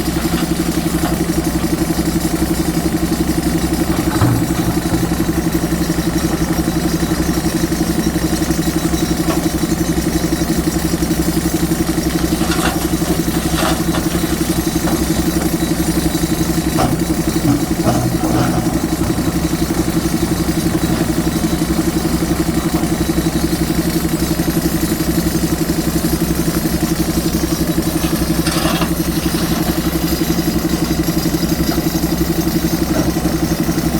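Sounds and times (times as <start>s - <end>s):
diesel engine running: 0.0s - 33.9s
faint clanks: 3.8s - 6.5s.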